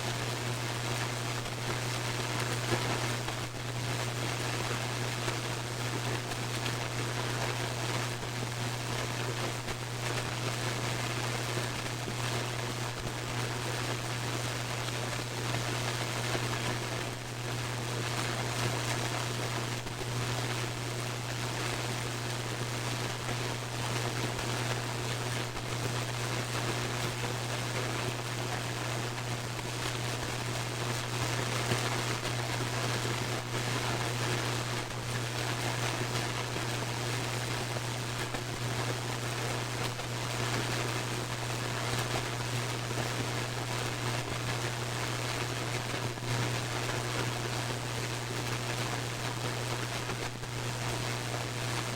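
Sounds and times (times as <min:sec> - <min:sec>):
radio static hiss: 0:00.0 - 0:51.9
static crackles: 0:00.0 - 0:51.9.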